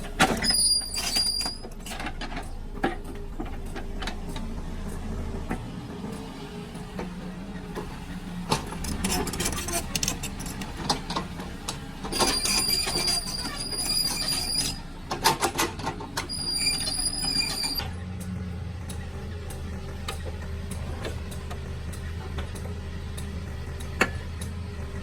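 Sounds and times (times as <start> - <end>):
excavator diesel engine running: 0.0 - 25.0
high metallic squeal: 0.4 - 1.8, 12.1 - 15.0, 16.2 - 17.9.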